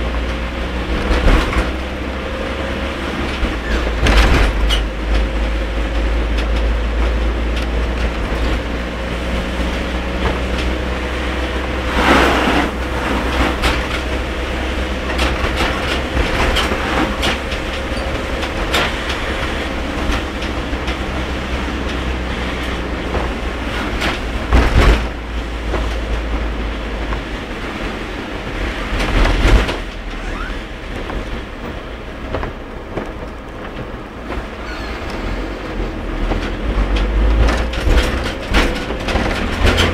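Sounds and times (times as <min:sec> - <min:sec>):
car engine and tyres rumbling: 0:00.0 - 0:39.9
car swooshing through water: 0:11.2 - 0:14.8.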